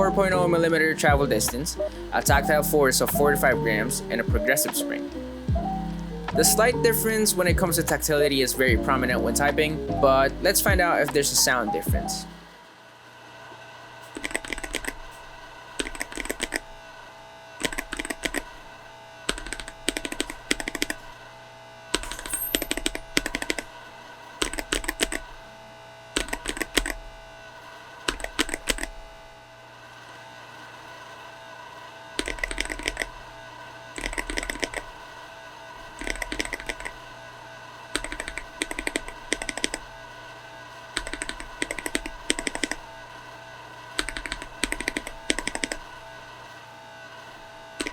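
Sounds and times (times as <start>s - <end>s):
mechanical keyboard typing: 14.1s - 15.1s, 15.8s - 16.7s, 17.6s - 18.6s, 19.3s - 21.1s, 22.0s - 23.7s, 24.4s - 25.3s, 26.2s - 27.0s, 28.1s - 29.0s, 32.2s - 33.2s, 34.0s - 34.9s, 36.0s - 37.0s, 38.0s - 39.9s, 41.0s - 42.8s, 44.0s - 45.8s.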